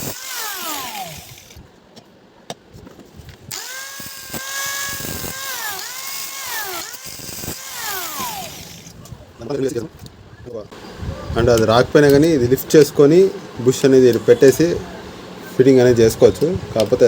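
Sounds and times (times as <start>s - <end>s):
electric drill motor running: 0.0s - 1.6s, 3.5s - 9.0s.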